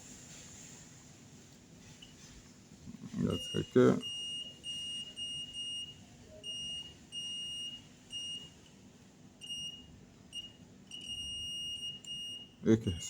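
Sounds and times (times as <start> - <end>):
multimeter beeping: 9.4 - 12.5.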